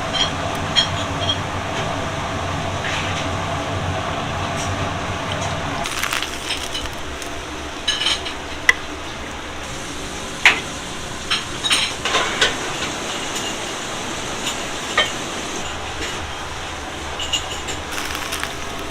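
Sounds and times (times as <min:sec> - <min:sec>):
egg sizzling in a pan: 0:05.8 - 0:08.0, 0:17.8 - 0:18.9.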